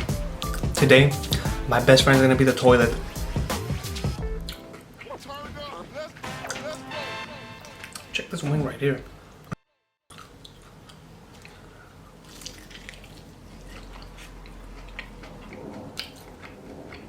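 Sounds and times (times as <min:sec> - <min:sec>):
person chewing crispy chicken: 0:10.1 - 0:17.0.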